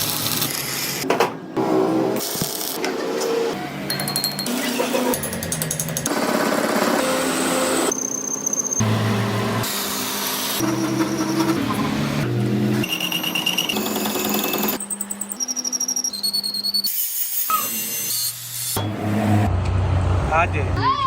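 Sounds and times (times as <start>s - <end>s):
power tools grinding metal: 4.3s - 19.5s.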